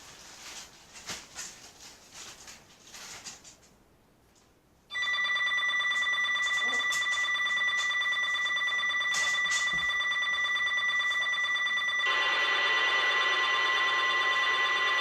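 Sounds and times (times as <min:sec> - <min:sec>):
harsh buzzy alarm tone: 0:04.9 - 0:15.0
steady high alert tones: 0:04.9 - 0:15.0.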